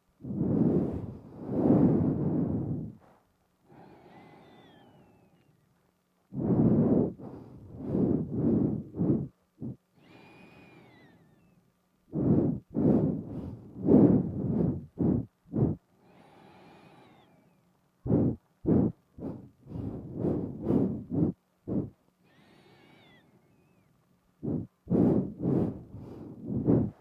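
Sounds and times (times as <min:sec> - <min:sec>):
nose breathing puffs: 0:00.2 - 0:05.4, 0:06.3 - 0:11.3, 0:12.1 - 0:23.2, 0:24.4 - 0:27.0.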